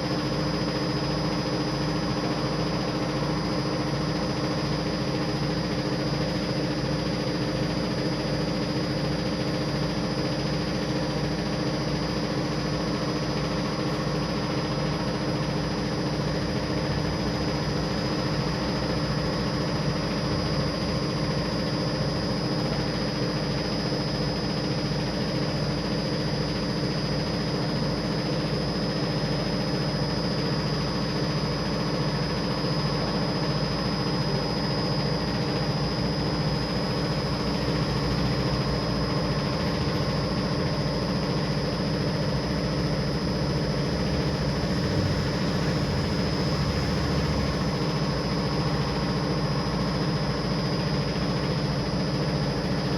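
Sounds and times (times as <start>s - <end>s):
carpet spinner motor whirring: 43.7s - 49.3s.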